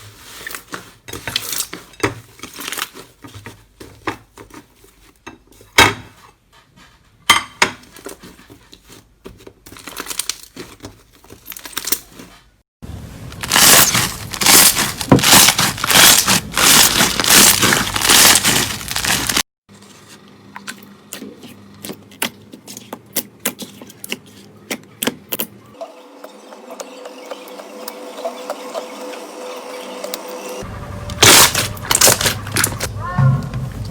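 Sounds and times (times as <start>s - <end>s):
slime crackling and popping: 13.4s - 19.4s, 31.2s - 32.9s.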